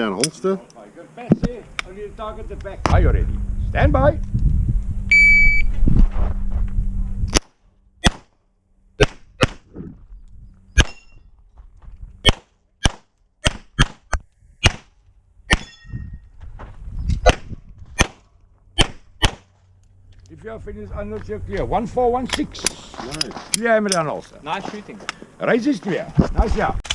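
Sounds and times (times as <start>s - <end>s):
loud low rumble: 2.0s - 7.3s
shot timer beep: 5.1s - 5.7s
pistol shots: 12.2s - 14.0s, 18.8s - 19.5s.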